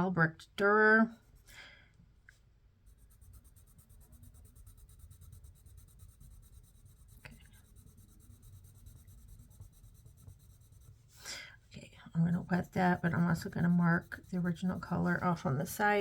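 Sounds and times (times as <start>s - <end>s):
pencil scratching on paper: 2.9s - 11.2s, 12.0s - 16.0s.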